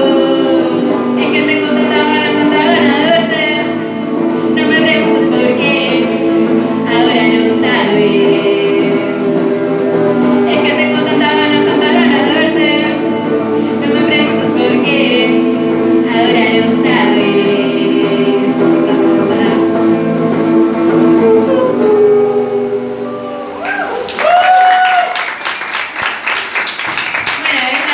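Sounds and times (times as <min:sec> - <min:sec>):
live rock band playing: 0:00.0 - 0:24.1
audience shouting: 0:23.1 - 0:25.3
audience clapping: 0:23.6 - 0:27.9.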